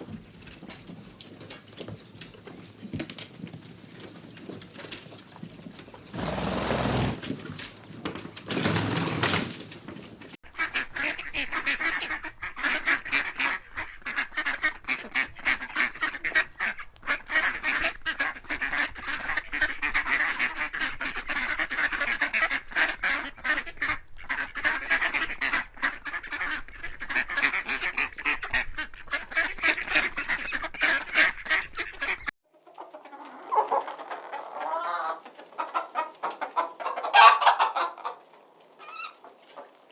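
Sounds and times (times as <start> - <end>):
waterfowl quacking and honking: 10.6 - 39.9.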